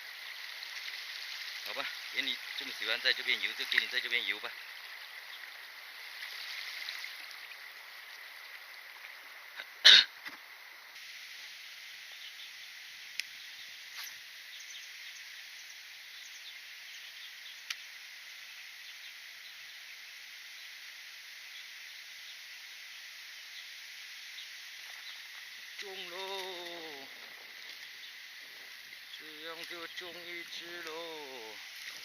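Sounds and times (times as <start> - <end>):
crickets chirping: 0.0 - 32.0
faint ticks: 13.1 - 14.2, 17.6 - 17.9.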